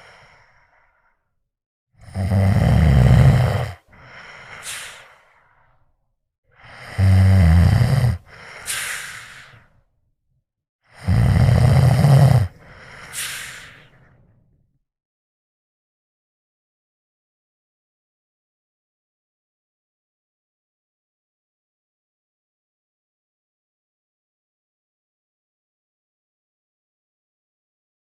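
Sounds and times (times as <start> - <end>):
cat snoring: 2.0 - 3.8, 6.6 - 8.3, 10.9 - 12.6
breath with high whistle: 8.4 - 9.8, 12.8 - 14.2.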